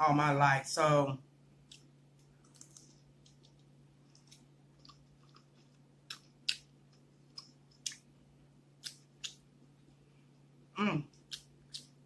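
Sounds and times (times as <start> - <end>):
faint low hum: 0.0 - 12.0
chewing with wet mouth clicks: 1.6 - 8.1, 8.8 - 9.4, 11.1 - 12.0.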